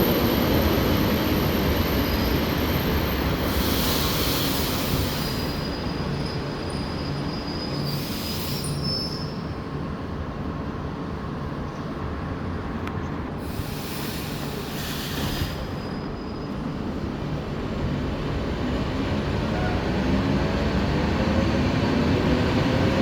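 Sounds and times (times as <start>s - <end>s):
electric train rumble: 0.0s - 23.0s
high wheel squeal: 0.3s - 9.6s, 14.4s - 16.8s.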